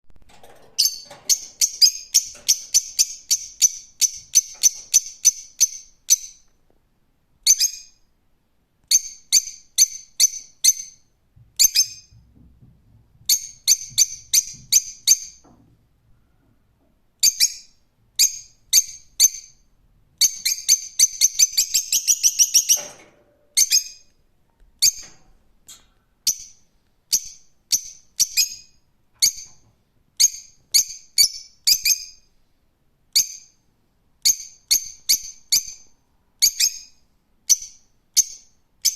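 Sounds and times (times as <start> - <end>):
lovebird chirping: 0.8 - 6.5, 7.4 - 8.1, 8.9 - 12.2, 13.3 - 15.4, 17.2 - 23.0, 23.6 - 24.1, 26.2 - 29.6, 30.2 - 32.3, 33.1 - 33.6, 34.2 - 38.9.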